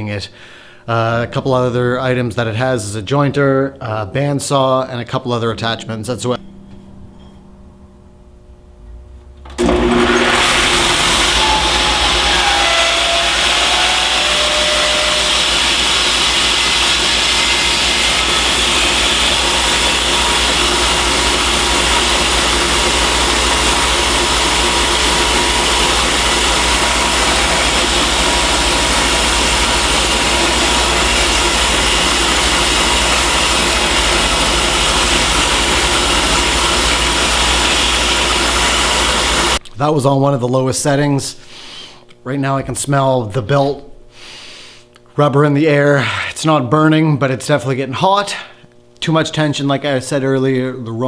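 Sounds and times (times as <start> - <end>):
woodworking machine motor whir: 9.0 - 39.6.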